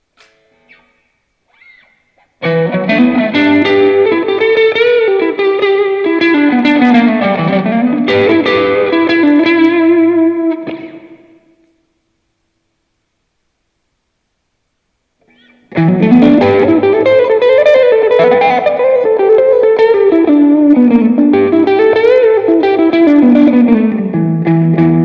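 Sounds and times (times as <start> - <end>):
electric guitar melody: 0.2 - 11.8, 15.2 - 25.0.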